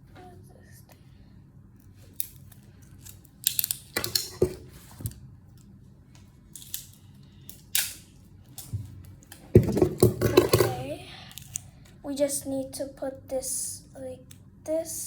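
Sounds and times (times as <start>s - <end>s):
plastic pieces clicking: 2.1s - 5.7s, 6.5s - 11.7s.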